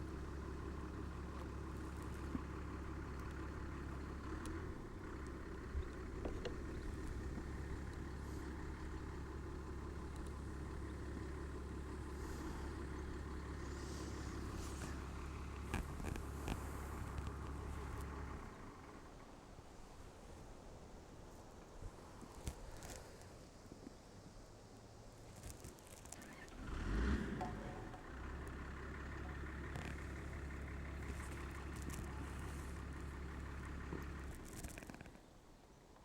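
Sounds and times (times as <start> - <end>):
low engine-like hum: 0.0 - 36.0
faint clicks: 10.0 - 11.3, 12.1 - 18.1, 27.3 - 35.4.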